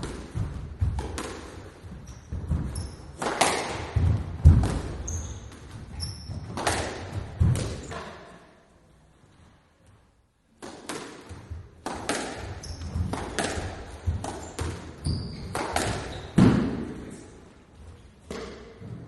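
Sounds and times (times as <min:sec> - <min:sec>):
squash ball strikes echoing: 0:00.0 - 0:08.4, 0:10.6 - 0:17.2, 0:18.3 - 0:19.0
shoe squeaks: 0:01.9 - 0:03.2, 0:04.9 - 0:06.6, 0:12.5 - 0:13.1, 0:14.4 - 0:16.4.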